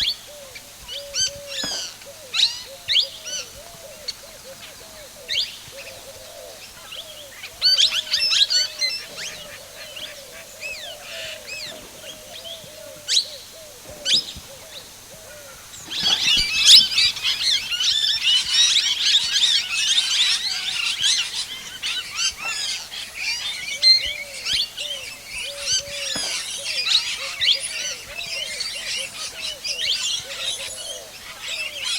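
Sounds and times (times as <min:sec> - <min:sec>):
low repeated bird call: 0:00.0 - 0:18.2
birds chirping: 0:05.4 - 0:18.1.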